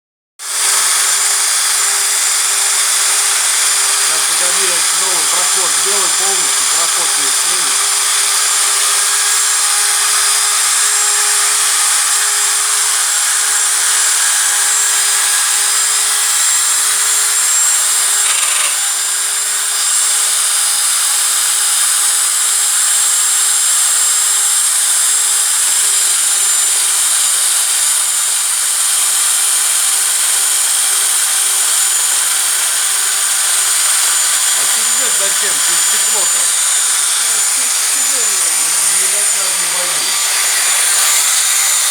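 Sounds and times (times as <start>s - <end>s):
high-pitched metal cutting: 0.4s - 41.9s
motor hum: 0.4s - 41.9s.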